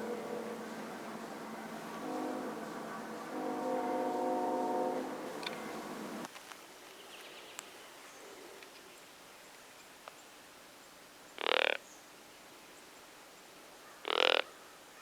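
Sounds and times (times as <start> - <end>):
crow cawing: 0.0 - 6.3, 13.8 - 14.8.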